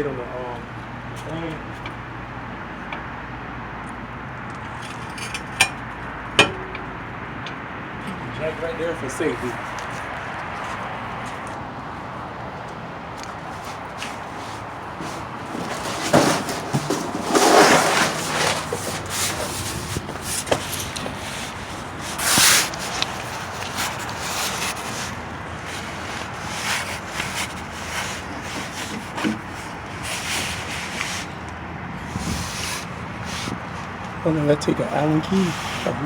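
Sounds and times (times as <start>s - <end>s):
tool clicks and knocks: 4.5s - 8.2s
rubbing and scraping: 4.6s - 6.8s, 13.4s - 31.4s, 32.0s - 36.0s.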